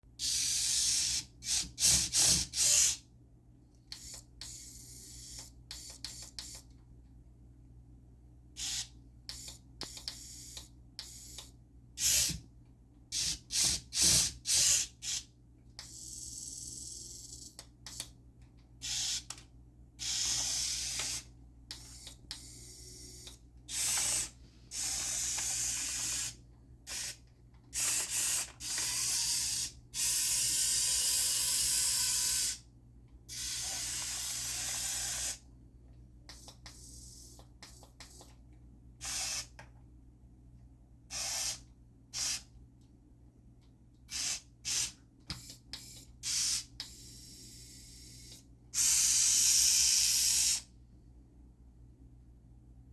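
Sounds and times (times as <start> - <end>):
small electric motors whirring: 0.2 - 3.0, 13.2 - 15.2, 18.8 - 19.3, 20.0 - 27.2, 27.8 - 32.6, 33.3 - 35.4, 46.2 - 50.7.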